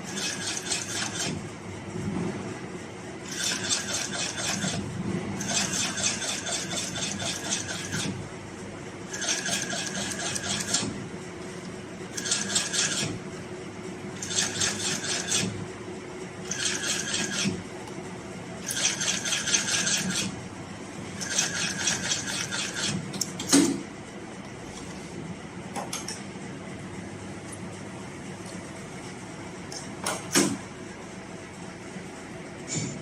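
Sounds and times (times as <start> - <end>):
sewing machine stitching rapidly: 0.0 - 1.4, 3.3 - 4.8, 5.4 - 8.2, 9.1 - 10.9, 12.1 - 13.2, 14.2 - 15.6, 16.5 - 17.6, 18.6 - 20.4, 21.2 - 23.0.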